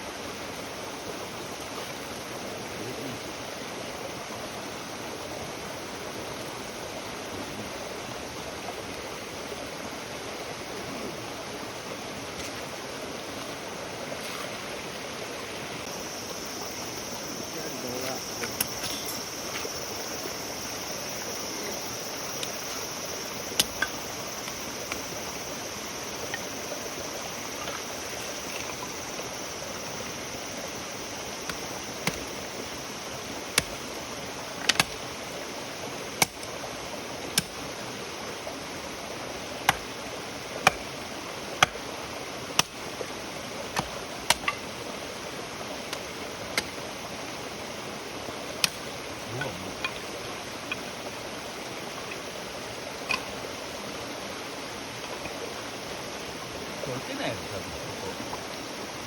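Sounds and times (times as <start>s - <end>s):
campfire burning with pops: 17.9s - 35.1s, 36.1s - 36.6s, 37.2s - 37.7s, 39.6s - 39.9s, 40.6s - 40.9s, 42.5s - 42.9s, 43.7s - 44.7s, 48.5s - 51.0s, 52.9s - 53.4s.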